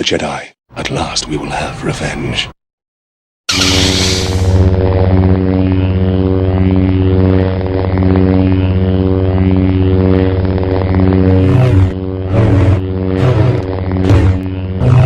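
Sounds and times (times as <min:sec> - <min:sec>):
lightsaber humming: 0:03.5 - 0:15.0.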